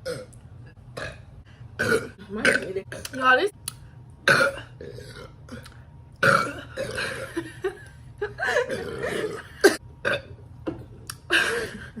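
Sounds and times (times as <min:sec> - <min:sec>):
woman burping: 0:01.8 - 0:03.1, 0:04.3 - 0:07.5, 0:08.4 - 0:10.3.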